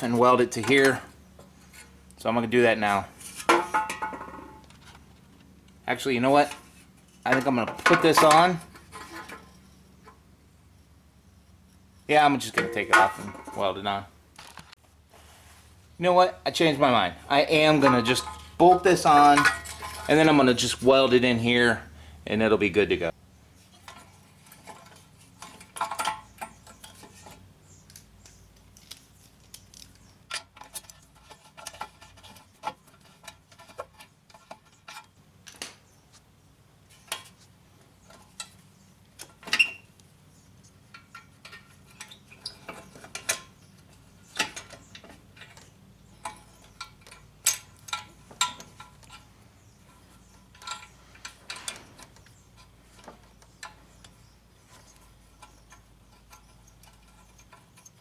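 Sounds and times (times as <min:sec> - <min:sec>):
tools and metal parts clinking: 0:03.2 - 0:05.0, 0:06.3 - 0:10.2, 0:11.7 - 0:14.8, 0:17.3 - 0:21.2, 0:23.7 - 0:35.7, 0:38.0 - 0:40.0, 0:40.8 - 0:58.0.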